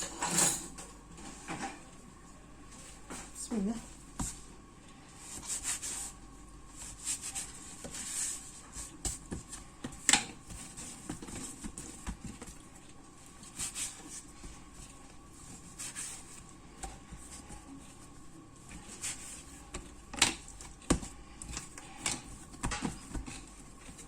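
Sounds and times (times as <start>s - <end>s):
hands kneading dough: 2.6s - 24.0s.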